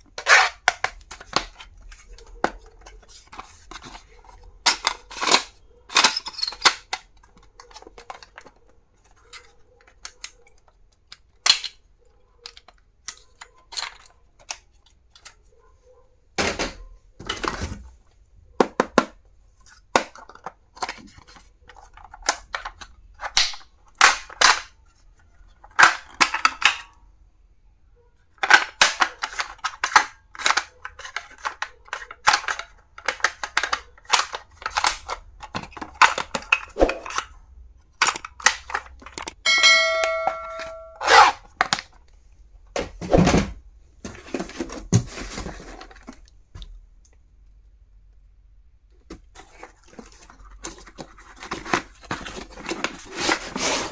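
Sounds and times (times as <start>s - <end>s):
plastic clicks and snaps: 38.0s - 39.4s
brief ringing tone: 39.5s - 41.0s.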